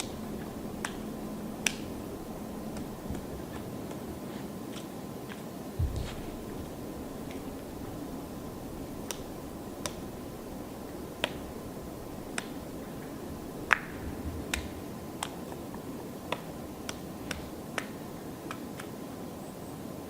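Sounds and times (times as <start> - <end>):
woodpecker pecking bark: 0.0 - 4.1.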